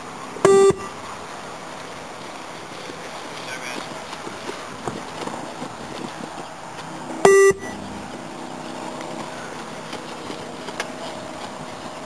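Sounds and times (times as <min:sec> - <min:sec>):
steady background noise: 0:00.0 - 0:12.0
short electronic beep: 0:00.4 - 0:01.0, 0:07.2 - 0:07.8.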